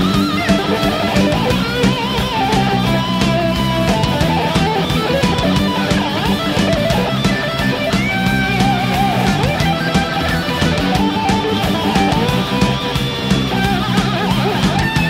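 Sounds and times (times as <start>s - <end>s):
heavy metal music: 0.0s - 15.0s.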